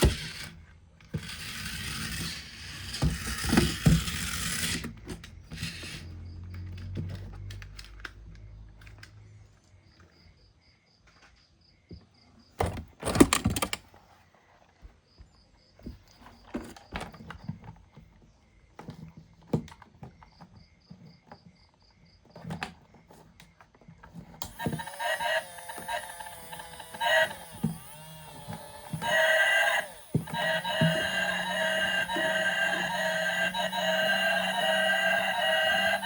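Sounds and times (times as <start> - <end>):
plastic toys clicking and tapping: 13.0 - 13.9, 24.4 - 36.0.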